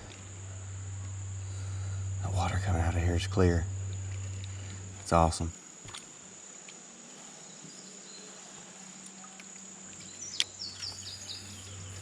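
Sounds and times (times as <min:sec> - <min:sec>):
high-pitched insect drone: 0:00.0 - 0:12.0
outdoor background noise: 0:00.0 - 0:12.0.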